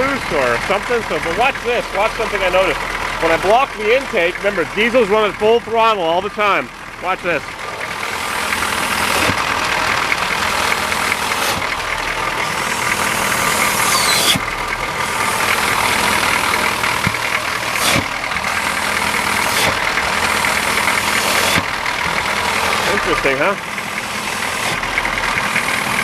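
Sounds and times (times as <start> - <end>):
diesel engine idling: 0.0 - 26.0
loud rushing intake noise: 7.2 - 26.0.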